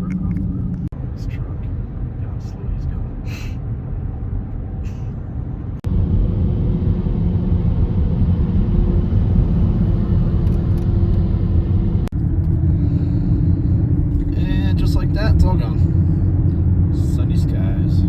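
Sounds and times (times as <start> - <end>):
low vehicle rumble: 0.0 - 18.0.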